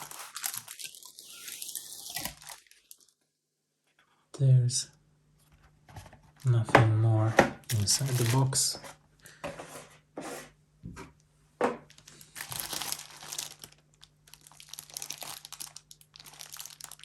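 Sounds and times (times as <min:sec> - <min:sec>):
plastic packaging crinkling: 0:00.0 - 0:03.2, 0:07.7 - 0:08.7, 0:11.9 - 0:17.0.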